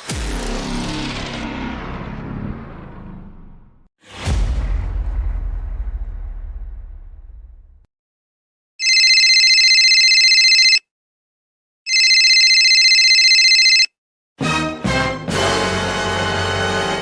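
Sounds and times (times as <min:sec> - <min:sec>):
telephone ringing: 0:08.8 - 0:10.9, 0:11.9 - 0:14.0.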